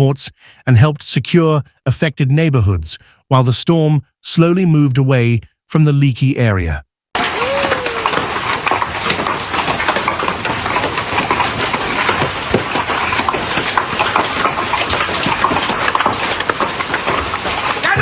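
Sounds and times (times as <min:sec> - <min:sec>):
hailstones pelting hard surfaces: 0:07.2 - 0:18.0.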